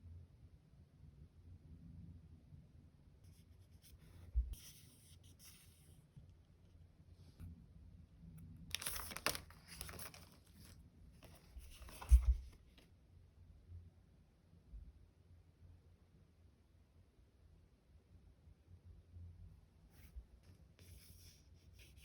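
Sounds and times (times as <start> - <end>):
paper rustling and peeling: 8.7 - 12.8.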